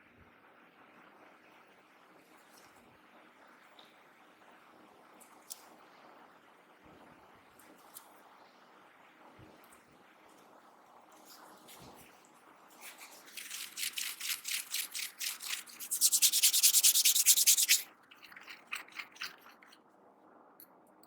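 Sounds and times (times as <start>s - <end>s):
hands rubbing skin: 12.8s - 19.8s.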